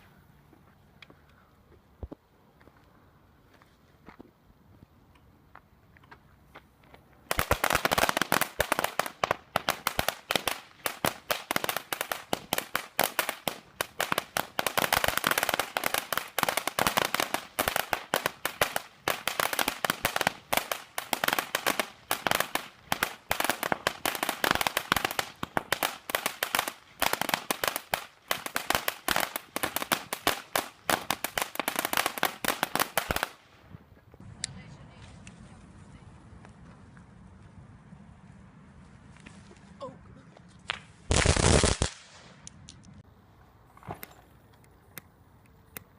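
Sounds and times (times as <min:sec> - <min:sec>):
firecrackers rapid bangs: 0:07.3 - 0:33.4, 0:40.7 - 0:42.4.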